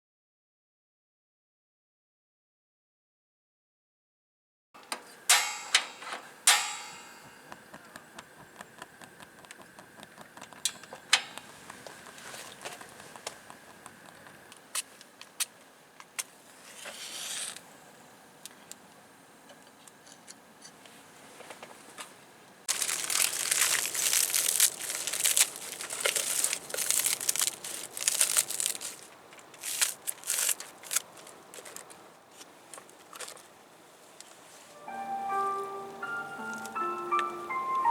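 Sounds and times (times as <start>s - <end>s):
scattered clicks: 4.8s - 16.2s
packaging crinkling and rustling: 22.7s - 33.5s.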